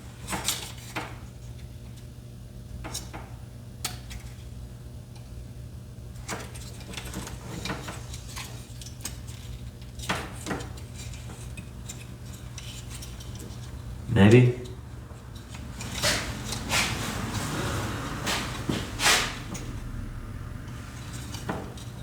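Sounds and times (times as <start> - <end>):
low steady hum: 13.7 - 22.0.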